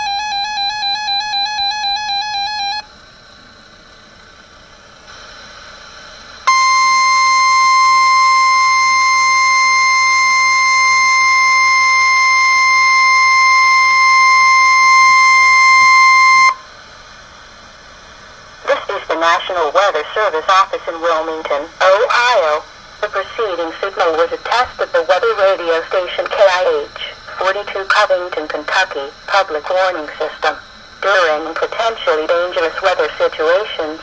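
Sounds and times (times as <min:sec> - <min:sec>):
steady alarm tone: 0:00.0 - 0:03.4, 0:06.4 - 0:16.8, 0:18.7 - 0:34.0
warbling electronic tone: 0:06.5 - 0:16.6
faint radio hiss: 0:16.8 - 0:34.0.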